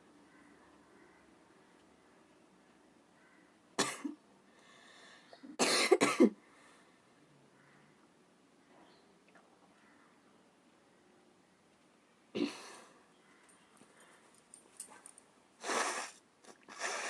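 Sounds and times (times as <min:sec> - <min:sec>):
person blowing nose: 0:15.6 - 0:17.0.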